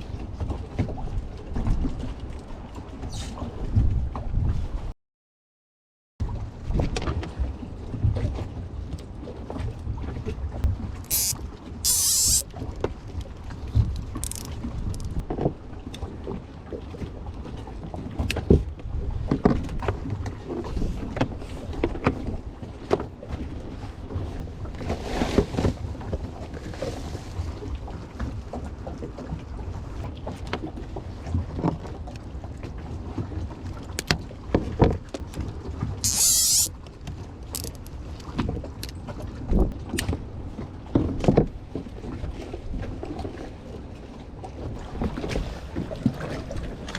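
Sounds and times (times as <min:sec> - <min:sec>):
water: 0:00.0 - 0:04.9, 0:06.2 - 0:46.9
wind rumble on microphone: 0:00.0 - 0:04.9, 0:13.2 - 0:33.5
knocks and clunks on boat: 0:06.2 - 0:10.4, 0:15.0 - 0:23.7, 0:38.2 - 0:46.9
short hiss: 0:11.1 - 0:12.4, 0:36.0 - 0:36.7.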